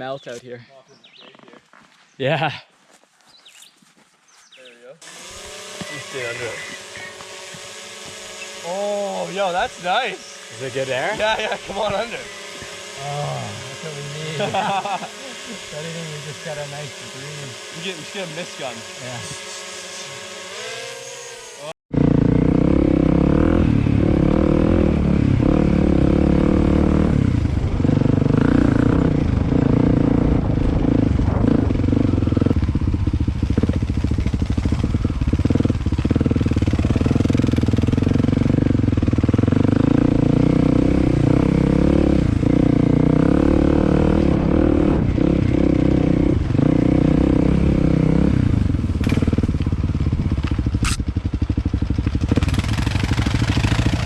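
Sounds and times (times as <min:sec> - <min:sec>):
dirt bike engine revving: 0:05.0 - 0:54.0.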